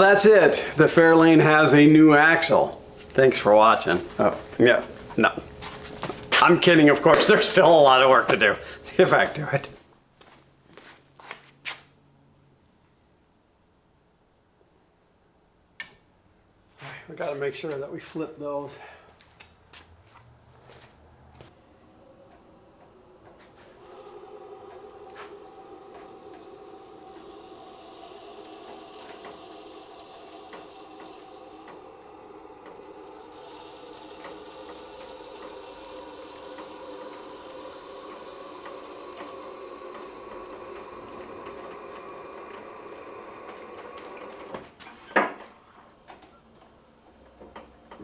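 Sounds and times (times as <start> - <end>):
hydraulic lift humming: 0.0 - 9.8, 21.5 - 48.0.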